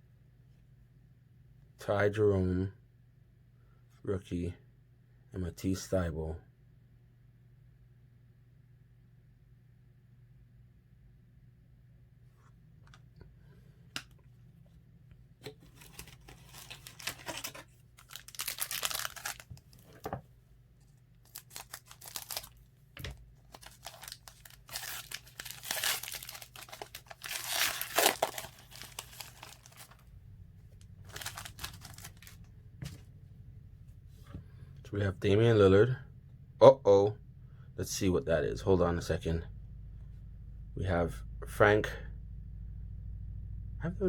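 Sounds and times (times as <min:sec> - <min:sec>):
card pack wrapper tearing and crinkling: 0:15.4 - 0:19.9, 0:21.3 - 0:30.0, 0:31.0 - 0:32.4.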